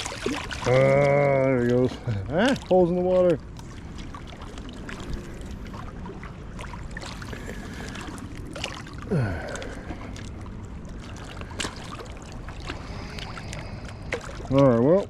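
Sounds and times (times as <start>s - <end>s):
river water rushing: 0.0s - 2.5s.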